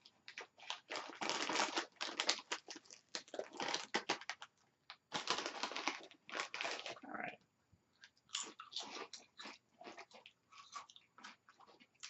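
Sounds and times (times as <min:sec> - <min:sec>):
chip bag crinkling: 0:00.2 - 0:07.0.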